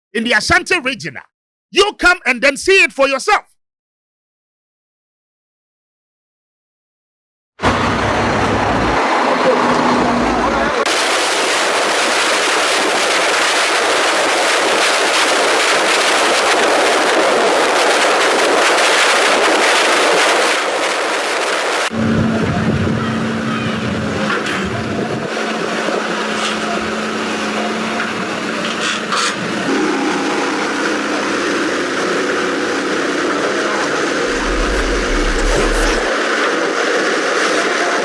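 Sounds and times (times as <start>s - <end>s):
harsh rushing noise: 34.3s - 36.1s
heavy engine humming: 34.3s - 36.1s.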